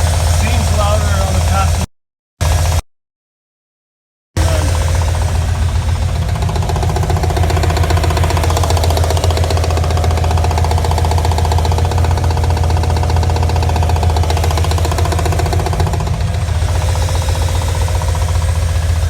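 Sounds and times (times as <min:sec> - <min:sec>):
rapid engine knocking: 0:00.0 - 0:02.8, 0:04.4 - 0:19.0
rotary engine running: 0:04.4 - 0:19.0.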